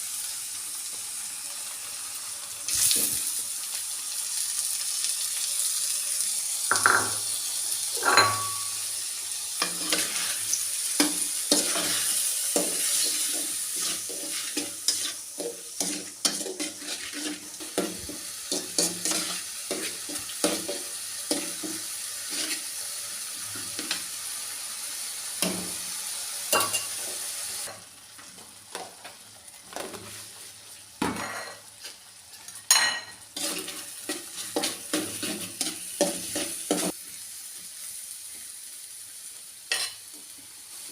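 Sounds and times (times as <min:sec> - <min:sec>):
food sizzling: 0:00.0 - 0:40.9
spatula scraping frying pan: 0:09.6 - 0:22.8, 0:31.2 - 0:37.0.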